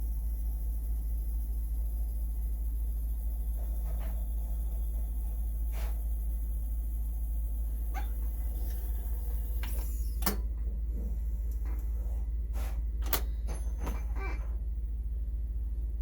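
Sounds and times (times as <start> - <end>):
steady low hum: 0.0 - 16.0
sharp clicks and knocks: 13.0 - 14.2.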